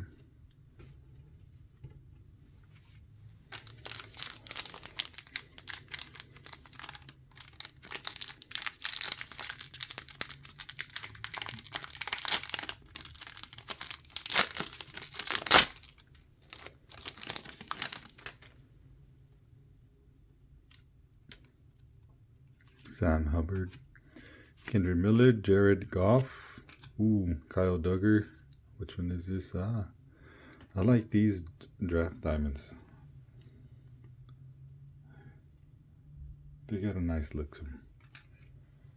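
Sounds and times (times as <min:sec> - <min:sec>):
card pack wrapper crinkling: 0:03.5 - 0:18.5.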